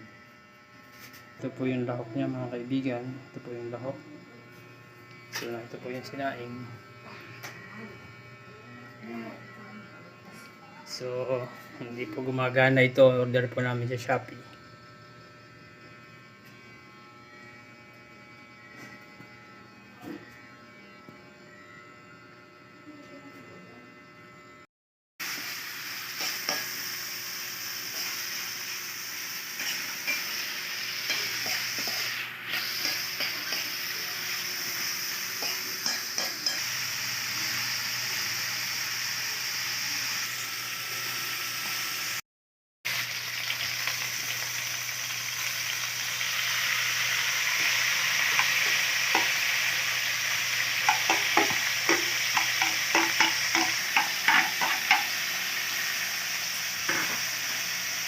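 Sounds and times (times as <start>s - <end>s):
food sizzling in a pan: 25.2s - 42.2s, 42.9s - 58.0s.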